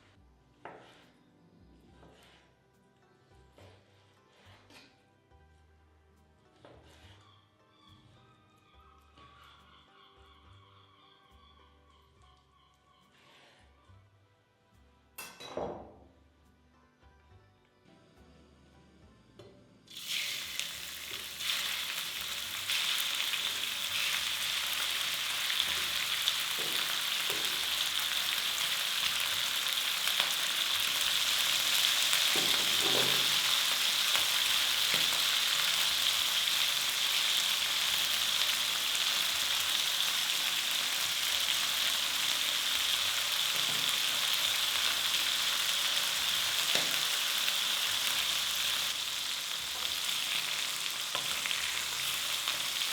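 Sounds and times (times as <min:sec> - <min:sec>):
food sizzling in hot pan: 0:19.9 - 0:52.9
pan knocking: 0:32.3 - 0:33.5.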